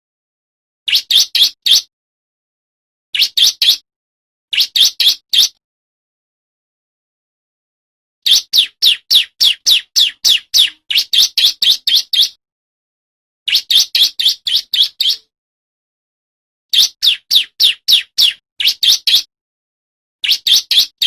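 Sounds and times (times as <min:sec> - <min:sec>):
bird singing high chirps: 0:00.9 - 0:01.9, 0:03.2 - 0:03.8, 0:04.5 - 0:05.6, 0:08.2 - 0:12.4, 0:13.5 - 0:15.3, 0:16.7 - 0:19.3, 0:20.2 - 0:21.0.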